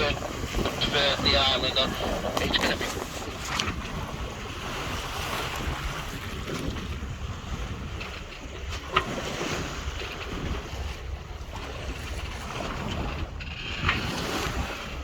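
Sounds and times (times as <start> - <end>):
water rushing along hull: 0.0 - 15.0
wind buffeting microphone: 0.0 - 15.0.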